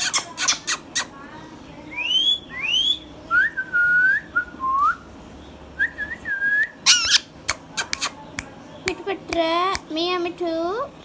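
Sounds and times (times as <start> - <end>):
parrot whistling: 6.6 - 8.1.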